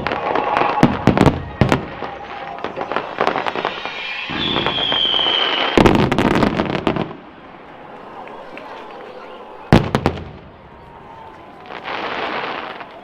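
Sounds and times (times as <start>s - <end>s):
fireworks crackling and popping: 0.0s - 7.4s, 11.5s - 13.0s
fireworks loud bangs: 0.0s - 7.5s, 9.7s - 13.0s
firework whistle: 0.0s - 13.0s.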